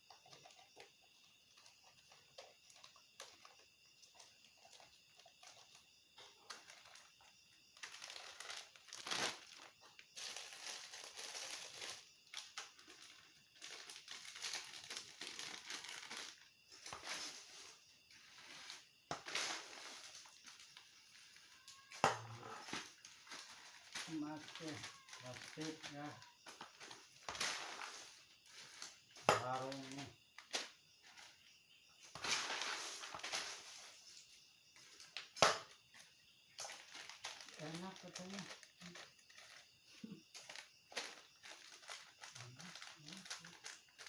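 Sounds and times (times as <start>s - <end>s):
plastic crumpling and crinkling: 1.6s - 31.3s, 32.1s - 34.2s, 36.5s - 44.0s.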